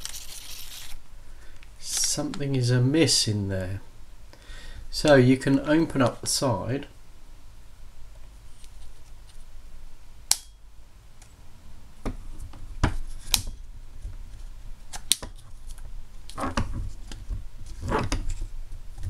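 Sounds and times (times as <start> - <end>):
rustling scrapes: 0.0 - 1.0.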